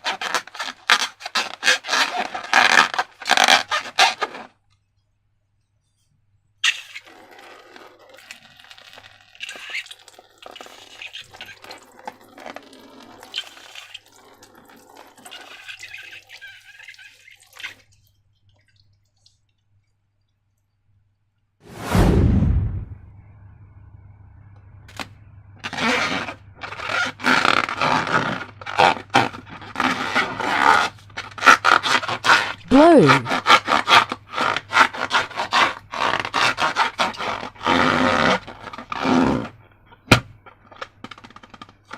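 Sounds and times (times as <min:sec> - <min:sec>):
slime and balloons rubbing: 0:00.0 - 0:04.5, 0:06.6 - 0:17.2, 0:25.6 - 0:39.5.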